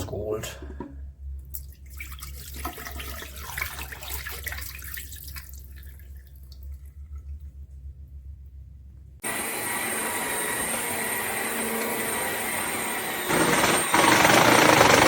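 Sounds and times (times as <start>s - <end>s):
water splashing and dripping: 1.5s - 7.6s.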